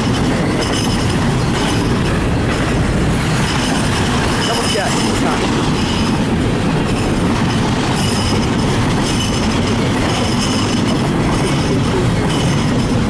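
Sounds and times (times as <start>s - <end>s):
train wheels rumbling on rail: 0.0s - 13.0s
high-pitched wheel squeals: 7.9s - 9.5s.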